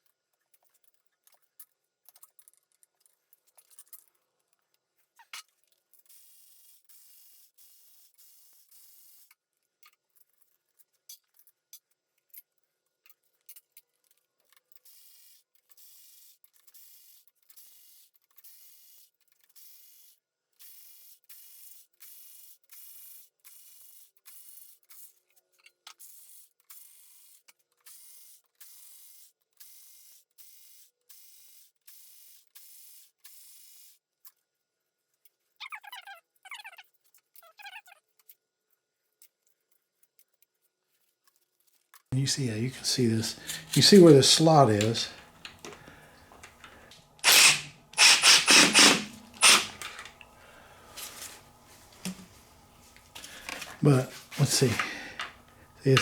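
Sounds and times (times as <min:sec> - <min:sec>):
ratchet wrench clicking: 0:47.2 - 0:50.1.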